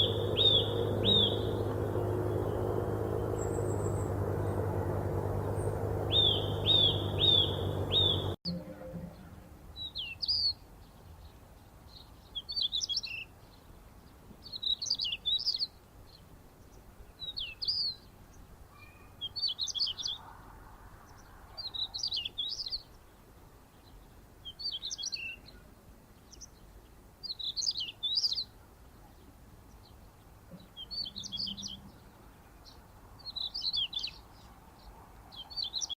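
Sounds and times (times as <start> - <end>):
steady bird chirps: 0.0 - 8.4, 30.5 - 36.0
songbird singing: 0.0 - 36.0.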